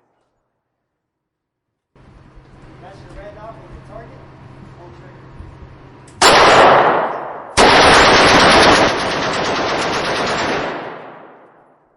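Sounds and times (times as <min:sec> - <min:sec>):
automatic gunfire echoing: 0:06.2 - 0:11.9.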